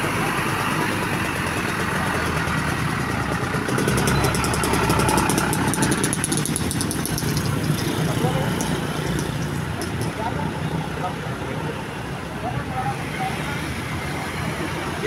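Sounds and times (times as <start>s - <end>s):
large vehicle engine idling: 0.0s - 8.4s
fast ticking clatter: 0.1s - 10.2s.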